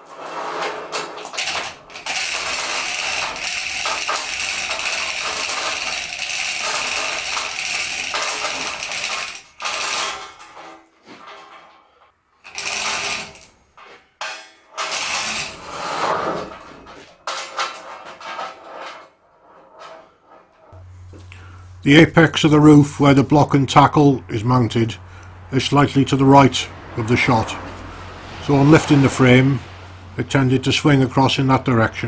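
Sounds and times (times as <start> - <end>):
chain rattling through block: 0.0 - 11.7, 12.5 - 13.6
chain block ratcheting: 1.0 - 10.6, 12.4 - 13.5.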